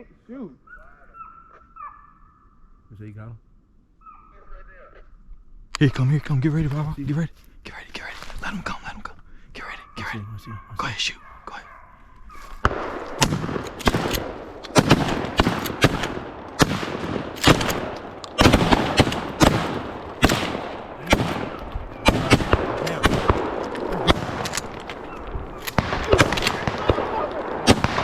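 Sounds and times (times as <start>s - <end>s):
rifle shots with echo: 12.5s - 28.0s.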